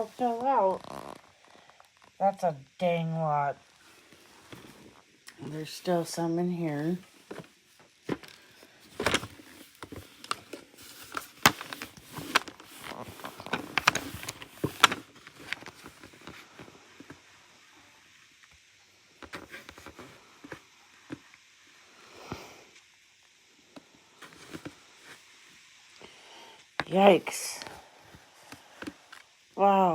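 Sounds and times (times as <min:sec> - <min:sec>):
rustling: 0:03.6 - 0:17.4
plastic parts clicking and knocking: 0:08.1 - 0:16.4.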